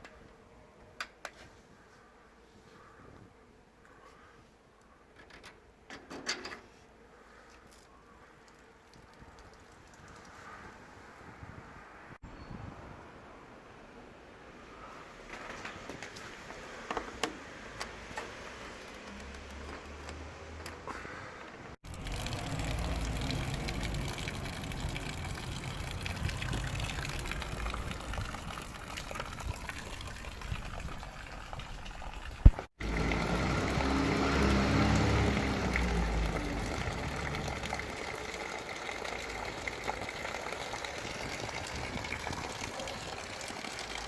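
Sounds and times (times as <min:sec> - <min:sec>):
water running and splashing: 0:21.8 - 0:44.0.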